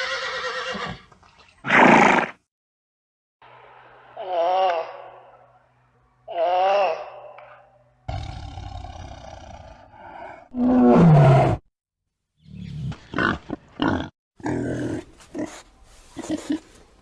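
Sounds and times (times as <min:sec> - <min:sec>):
animal grunts: 0:08.1 - 0:11.6
animal roaring: 0:08.1 - 0:11.6.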